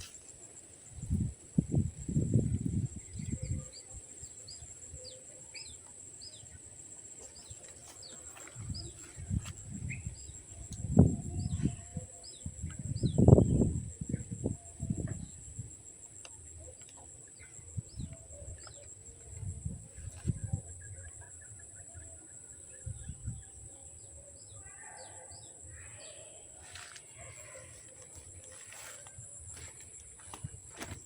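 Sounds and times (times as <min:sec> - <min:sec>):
birds chirping: 0:02.7 - 0:15.5.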